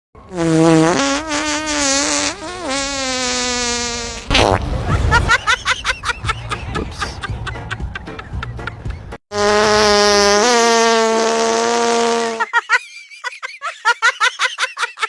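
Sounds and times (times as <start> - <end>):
fart noise: 0.3 - 4.8, 9.3 - 12.5.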